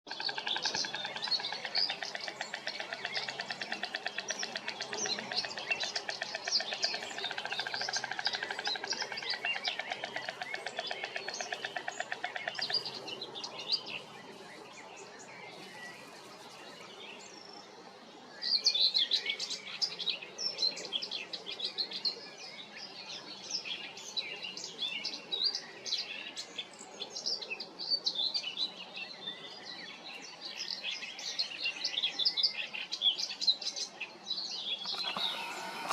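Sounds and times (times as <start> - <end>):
small songbirds chirping: 0.1 - 35.9
storks clattering bills: 34.8 - 35.9.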